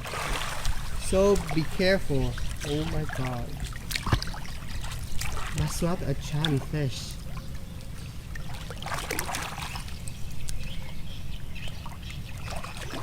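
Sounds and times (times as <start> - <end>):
steady low rumble: 0.0 - 8.9
water splashing and trickling: 0.0 - 13.0.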